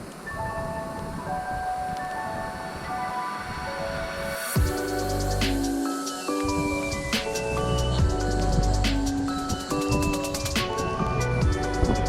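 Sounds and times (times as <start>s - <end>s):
synth notes over bass line: 4.6s - 12.0s
ticking hi-hats: 4.6s - 12.0s.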